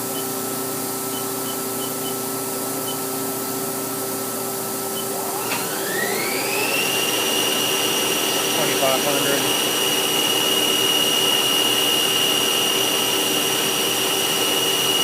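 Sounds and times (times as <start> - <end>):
lathe spindle humming: 4.2 - 15.0
spindle whine rising in pitch: 5.0 - 15.0.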